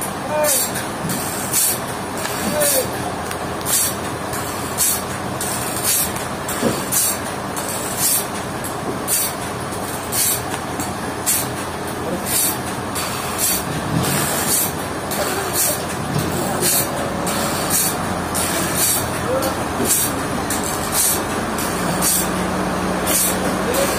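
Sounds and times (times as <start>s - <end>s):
sawmill machinery running: 0.0s - 23.9s.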